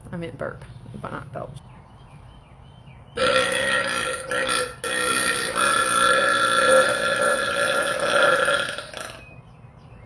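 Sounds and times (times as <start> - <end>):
woman burping: 3.2 - 9.2.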